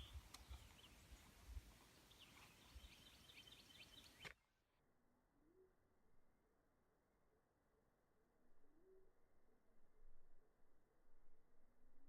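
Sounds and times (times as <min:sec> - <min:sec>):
faint bird chirps: 0:00.0 - 0:04.4, 0:05.3 - 0:06.0, 0:08.6 - 0:09.4.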